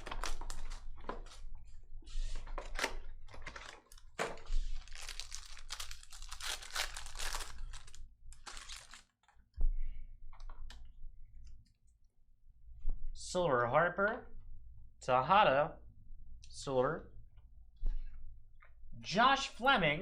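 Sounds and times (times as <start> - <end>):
wrapper tearing and crinkling: 0.0 - 1.4, 2.6 - 9.3
cards handled rustling: 2.2 - 9.1.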